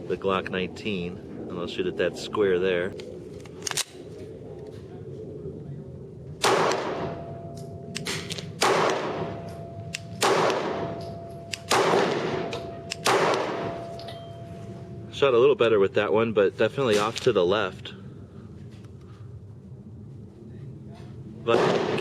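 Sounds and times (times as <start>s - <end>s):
pistol shots with echo: 6.4s - 7.3s, 8.0s - 13.9s, 21.5s - 22.0s.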